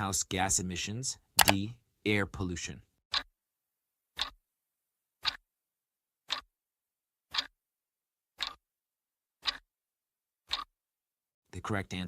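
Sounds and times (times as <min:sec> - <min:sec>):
clock ticking: 0:01.4 - 0:01.7, 0:04.2 - 0:04.4, 0:05.2 - 0:05.4, 0:06.3 - 0:06.5, 0:07.3 - 0:07.5, 0:08.4 - 0:08.6, 0:09.4 - 0:09.6, 0:10.5 - 0:10.7.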